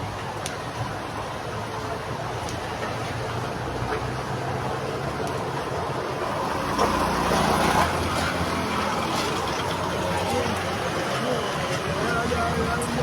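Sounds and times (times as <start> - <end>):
traffic engine rumble: 0.0 - 13.0
vehicle passing: 3.2 - 13.0.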